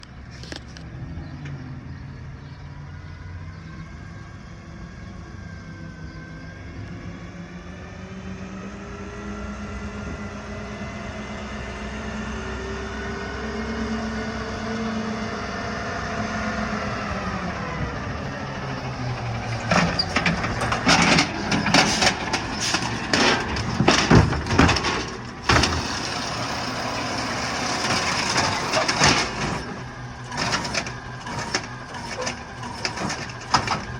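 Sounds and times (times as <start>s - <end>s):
garbage truck diesel engine: 0.0s - 33.9s
loud clanks and bangs: 19.2s - 33.9s.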